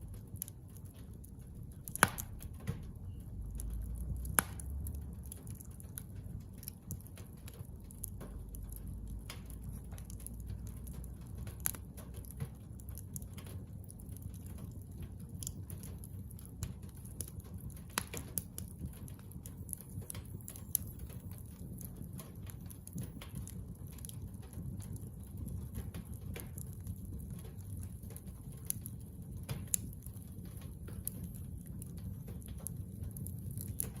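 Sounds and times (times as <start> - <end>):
fire crackling and popping: 0.0 - 34.0
low rumble of flames: 0.0 - 34.0.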